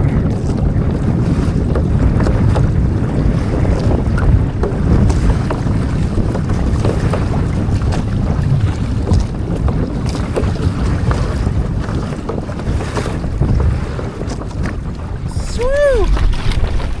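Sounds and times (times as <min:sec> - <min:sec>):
water splashing against hull: 0:00.0 - 0:17.0
wind buffeting microphone: 0:00.0 - 0:17.0.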